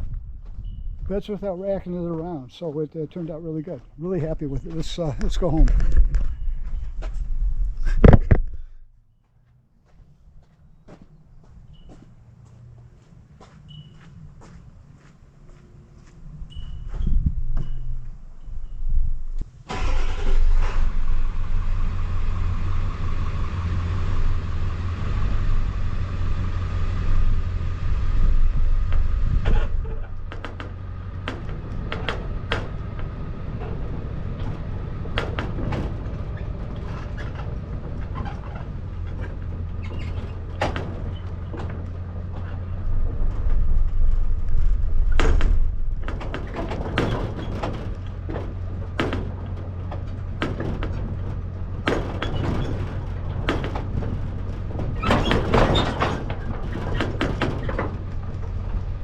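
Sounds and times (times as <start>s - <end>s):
vehicle engine rumble: 0.0s - 59.0s
engine whine: 9.5s - 59.0s
rattles and knocks: 16.0s - 19.4s, 20.9s - 59.0s.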